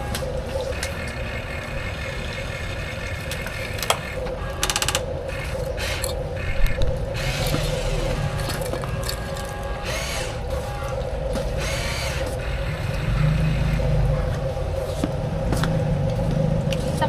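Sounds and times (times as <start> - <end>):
electric gear motors whirring: 0.0 - 17.0
scattered clicks: 0.1 - 10.3
quick ticking: 0.6 - 10.5
loud clatter: 2.8 - 10.8.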